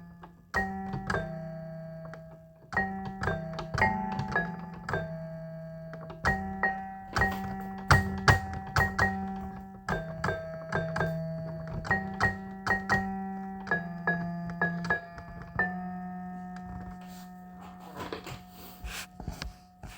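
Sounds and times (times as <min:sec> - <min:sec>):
chiming keyboard notes: 0:00.0 - 0:18.4.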